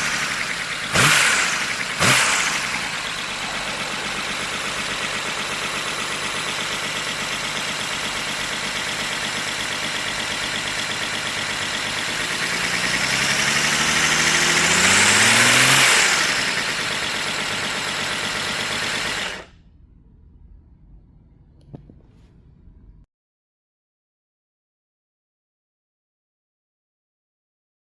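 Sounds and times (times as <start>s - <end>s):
air engine running: 0.0s - 19.6s.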